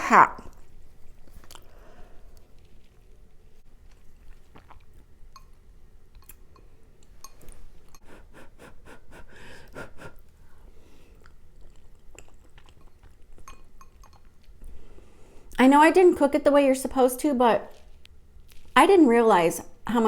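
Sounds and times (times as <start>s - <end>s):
close chewing of soft food: 0.5s - 15.6s.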